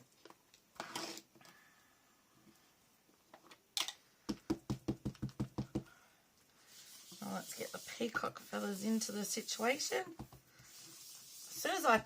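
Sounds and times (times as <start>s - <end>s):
foam tool tapping on paper: 4.3s - 5.9s, 10.1s - 10.4s.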